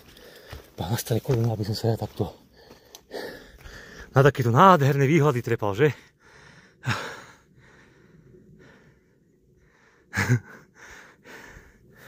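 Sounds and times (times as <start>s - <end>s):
man breathing hard: 0.0s - 0.8s, 2.4s - 4.1s, 6.0s - 12.0s.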